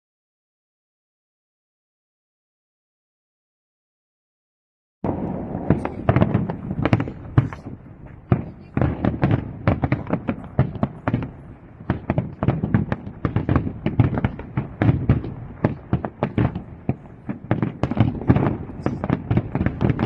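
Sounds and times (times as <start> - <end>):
fireworks bangs and crackles: 5.0 - 20.0
low rumble of booms: 5.1 - 20.0.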